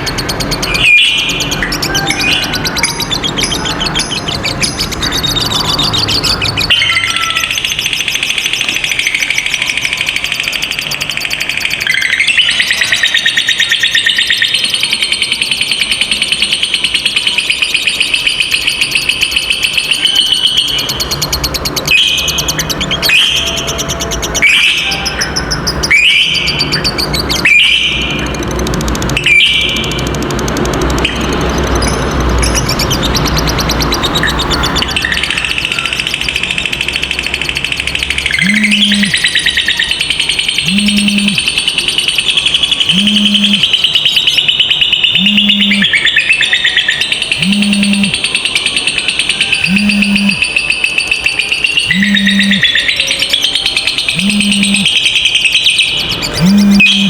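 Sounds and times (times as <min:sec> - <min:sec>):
lovebird chattering trill: 0:00.0 - 0:57.0
short shrill bird calls: 0:05.6 - 0:09.7, 0:38.3 - 0:39.9, 0:51.5 - 0:52.9.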